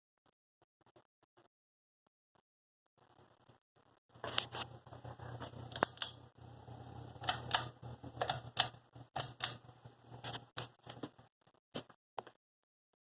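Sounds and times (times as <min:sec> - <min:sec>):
ceiling fan motor hum: 0:04.2 - 0:11.3.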